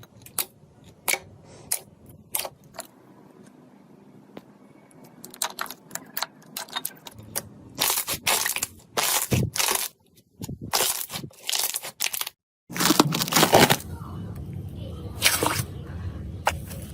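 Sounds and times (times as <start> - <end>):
slime crunching squishes: 0.0 - 2.9, 7.3 - 13.9.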